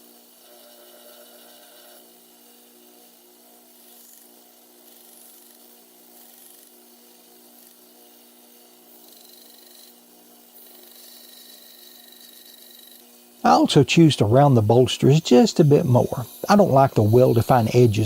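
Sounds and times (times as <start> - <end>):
sanding strokes on knife handle: 0.0 - 13.0, 14.7 - 18.0
low electrical hum: 6.8 - 18.0.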